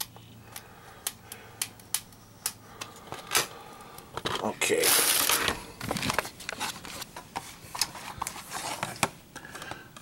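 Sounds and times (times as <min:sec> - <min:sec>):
plastic wrapping crinkling: 0:04.2 - 0:09.6.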